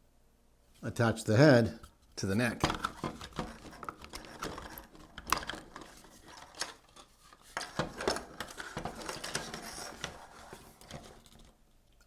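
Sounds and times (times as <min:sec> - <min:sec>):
plastic parts clicking together: 0:02.6 - 0:12.0.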